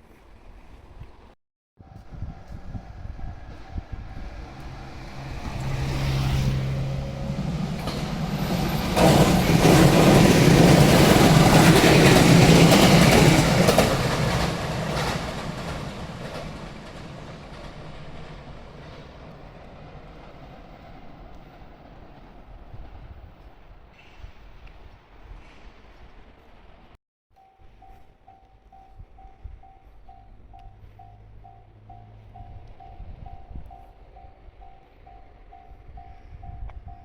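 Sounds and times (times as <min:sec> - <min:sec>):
train passing: 0:00.0 - 0:37.0
train wheel clatter: 0:07.6 - 0:20.5.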